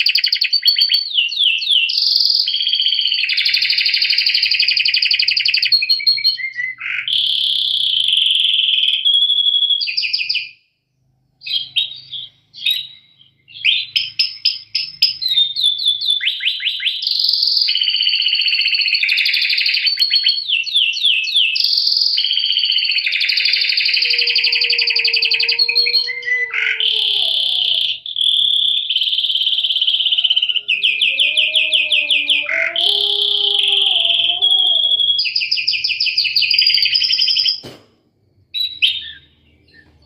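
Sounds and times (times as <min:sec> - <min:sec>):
canary singing trills: 0:11.4 - 0:37.6, 0:38.5 - 0:40.0.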